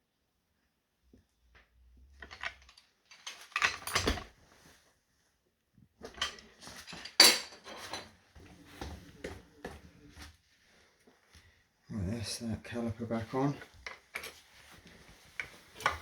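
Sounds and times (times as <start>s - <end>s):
metal tools clinking and clanking: 2.2s - 4.3s, 6.1s - 8.1s.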